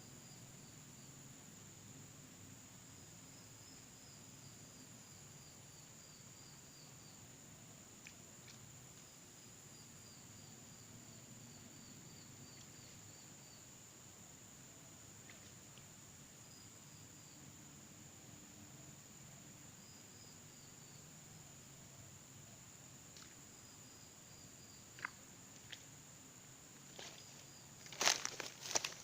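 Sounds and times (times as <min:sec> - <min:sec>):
insect chirps: 0:00.0 - 0:29.0.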